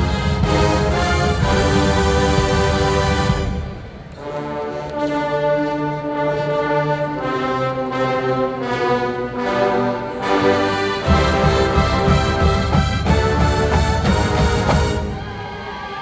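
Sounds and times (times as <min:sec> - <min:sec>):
marching band with drums: 0:00.0 - 0:04.8, 0:10.2 - 0:16.0
brass playing held chords: 0:00.0 - 0:15.6
low brass notes: 0:00.0 - 0:15.9.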